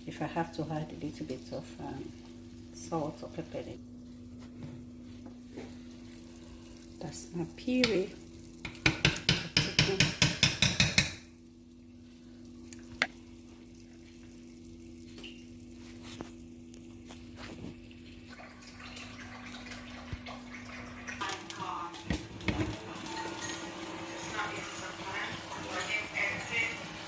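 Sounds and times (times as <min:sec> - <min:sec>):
spoon clattering against pot: 0:08.6 - 0:11.2
kitchen utensils clinking: 0:22.2 - 0:24.8.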